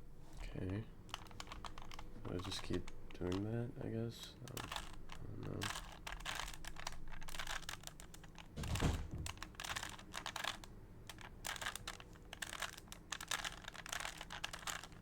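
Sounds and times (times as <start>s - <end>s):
puzzle cube plastic clicks: 0.4s - 3.5s, 4.4s - 15.0s
dull thump: 8.6s - 9.4s.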